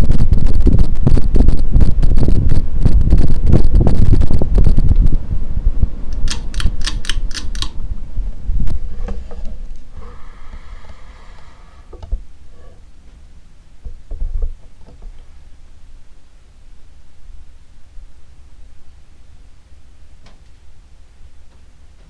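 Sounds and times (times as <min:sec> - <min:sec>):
fan air buffeting microphone: 0:00.0 - 0:22.0
sharp clicks: 0:06.1 - 0:07.8.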